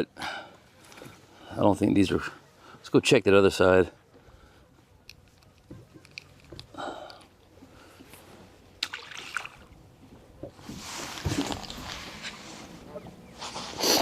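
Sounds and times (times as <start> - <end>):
water sloshing around boat: 0.2 - 2.9, 3.6 - 13.8.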